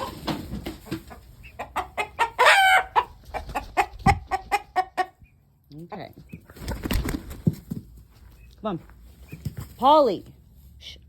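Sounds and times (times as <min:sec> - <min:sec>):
chickens clucking: 0:00.0 - 0:09.8
loud drawn-out chicken call: 0:02.2 - 0:03.0.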